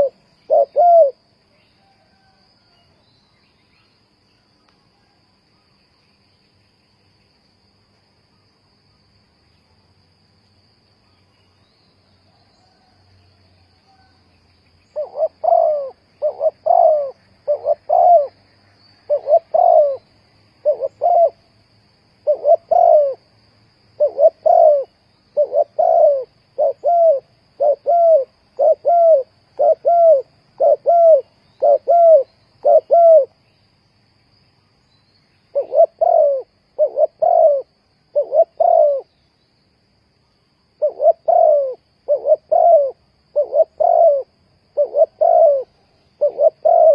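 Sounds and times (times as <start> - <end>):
dove cooing: 0.0 - 2.7, 14.9 - 18.4, 19.0 - 21.5, 22.2 - 23.3, 24.0 - 33.4, 35.5 - 39.1, 40.8 - 46.9.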